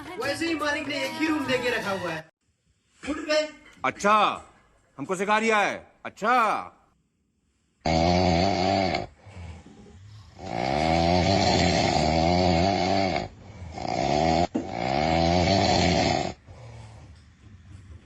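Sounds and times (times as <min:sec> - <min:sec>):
man snoring loudly: 0:07.8 - 0:16.8.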